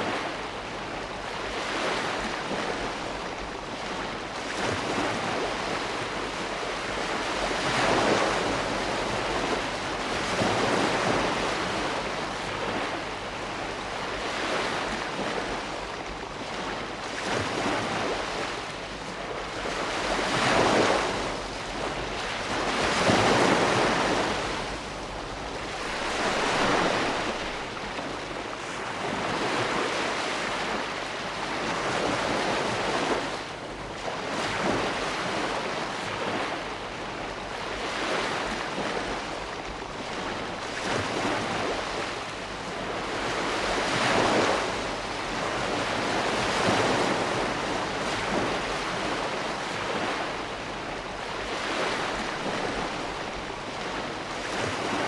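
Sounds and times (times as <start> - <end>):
ocean waves breaking: 0.0 - 55.0.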